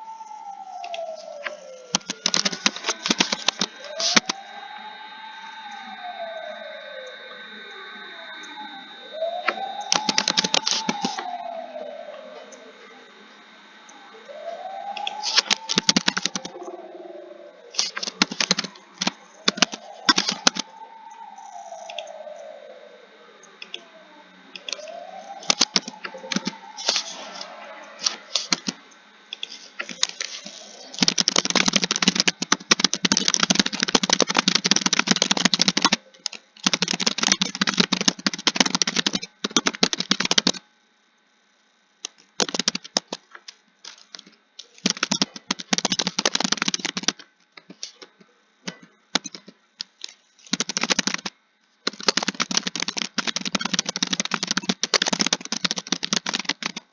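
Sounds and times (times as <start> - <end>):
faint sliding tones: 0.0 - 34.7
computer keyboard typing: 0.8 - 4.4, 9.4 - 11.3, 15.0 - 16.8, 17.8 - 20.7, 24.6 - 28.8, 29.4 - 40.6, 42.1 - 43.2, 43.9 - 47.2, 48.7 - 51.3, 51.9 - 56.8.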